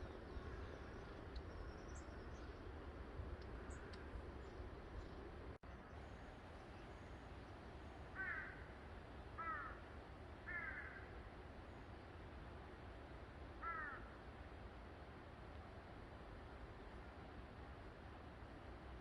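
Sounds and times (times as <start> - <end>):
crow cawing: 8.1 - 8.7, 9.4 - 9.8, 10.4 - 11.1, 13.6 - 14.1.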